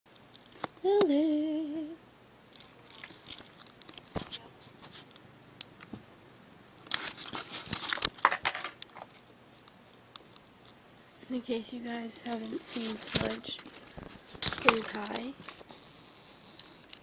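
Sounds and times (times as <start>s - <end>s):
person calling in sing-song: 0.8s - 2.0s
crackly rustling: 2.5s - 6.1s, 6.8s - 17.0s.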